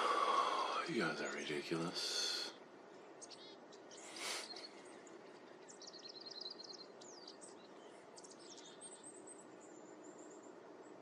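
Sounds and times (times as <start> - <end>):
small birds chirping and twittering: 0.0 - 11.0
steady background hiss: 0.0 - 11.0.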